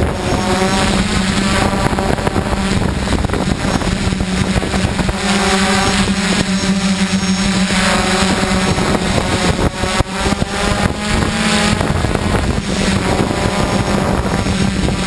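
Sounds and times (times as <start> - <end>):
drone motors and propellers humming: 0.0 - 15.0
wind buffeting microphone: 0.0 - 15.0.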